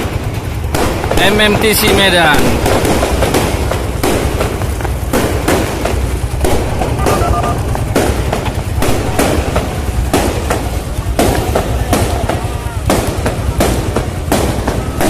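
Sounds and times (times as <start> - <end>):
fireworks bangs: 0.0 - 15.0
low rumble: 2.4 - 11.5.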